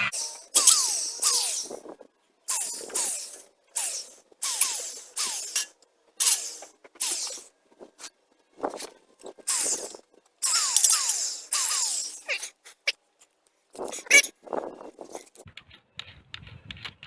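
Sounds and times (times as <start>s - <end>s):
power drill biting into wood: 0.0s - 1.8s, 2.5s - 7.5s, 9.4s - 12.5s.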